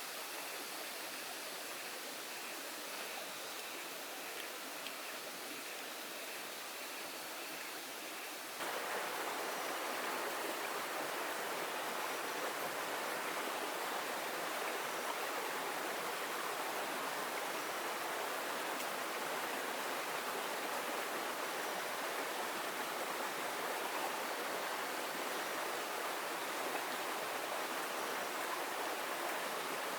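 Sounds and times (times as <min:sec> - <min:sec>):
water rushing: 0:08.4 - 0:29.9.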